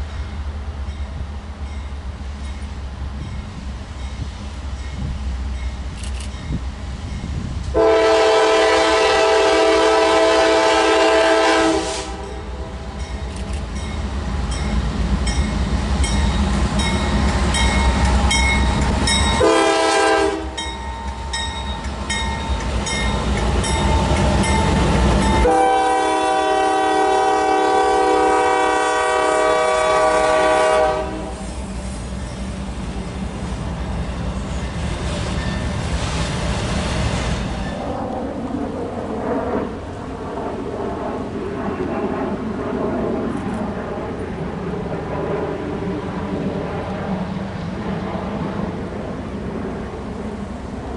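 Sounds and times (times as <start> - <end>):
locomotive rumbling past: 0.0 - 50.9
locomotive air horn: 7.7 - 12.7, 19.4 - 20.6, 25.4 - 31.6.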